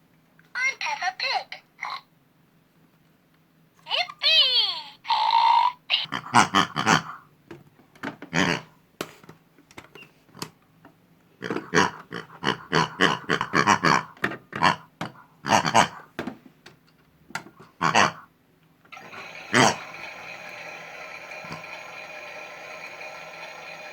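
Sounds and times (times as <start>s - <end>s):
pig oinking and grunting: 6.0s - 7.3s, 8.3s - 8.7s, 11.4s - 16.1s, 17.8s - 18.3s
small motor whirring: 18.9s - 23.9s.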